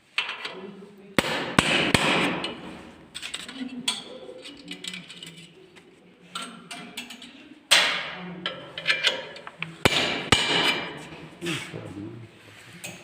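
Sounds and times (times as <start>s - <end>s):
hammer striking workpiece: 1.2s - 2.7s, 9.9s - 11.0s.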